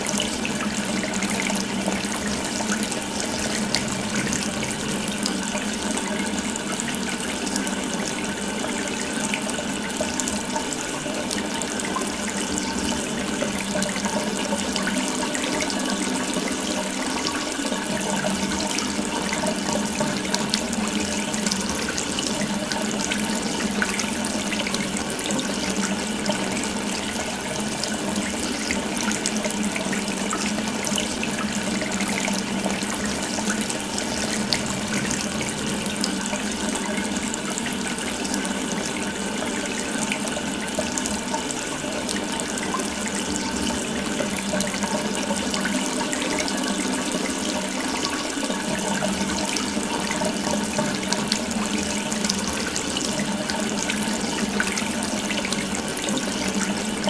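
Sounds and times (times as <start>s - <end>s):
water running from tap: 0.0s - 57.0s.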